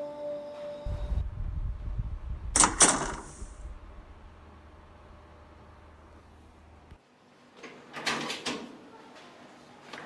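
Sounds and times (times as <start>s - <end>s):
low background rumble: 0.9s - 7.0s.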